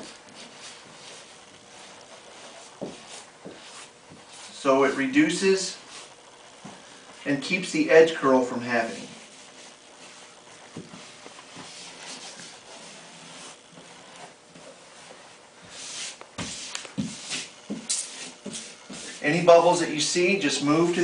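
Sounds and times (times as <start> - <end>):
hand rubbing vinyl decal: 0.0 - 6.8, 8.8 - 19.7.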